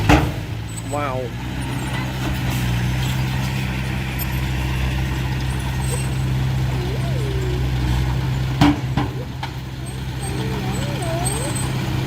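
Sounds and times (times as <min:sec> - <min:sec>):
diesel engine running steadily: 0:00.0 - 0:12.0.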